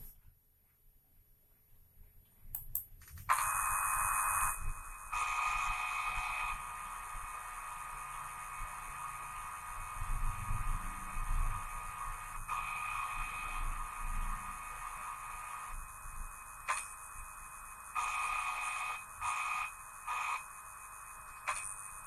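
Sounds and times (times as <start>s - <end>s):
lathe high whine with hiss: 3.3s - 22.0s
machine clicks: 16.7s - 17.0s, 21.2s - 22.0s.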